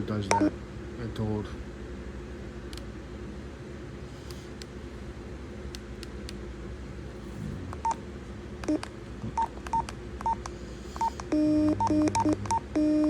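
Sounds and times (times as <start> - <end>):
radio key beeps: 0.3 - 0.5, 8.6 - 13.0.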